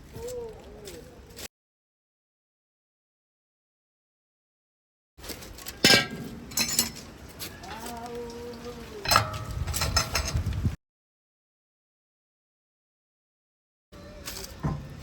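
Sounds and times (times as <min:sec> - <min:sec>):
hand tools clinking: 0:05.4 - 0:10.4.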